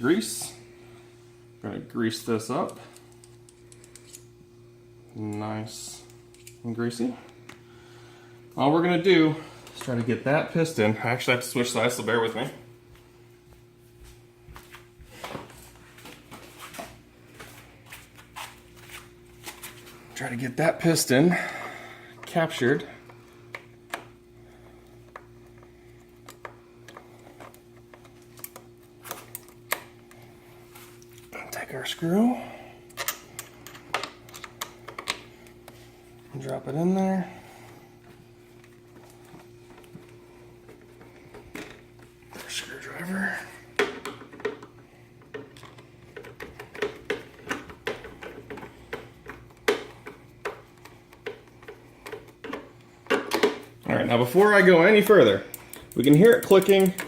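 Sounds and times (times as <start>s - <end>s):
steady low hum: 0.0s - 57.0s.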